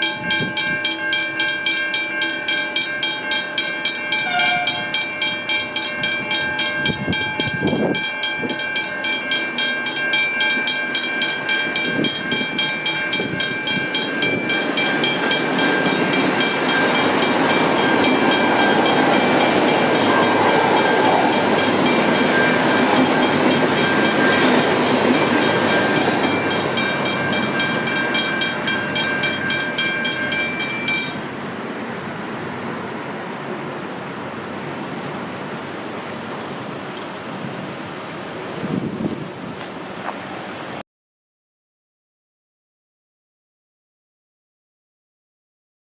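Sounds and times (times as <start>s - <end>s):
level crossing bell ringing: 0.0s - 31.3s
train rumbling: 0.0s - 40.8s.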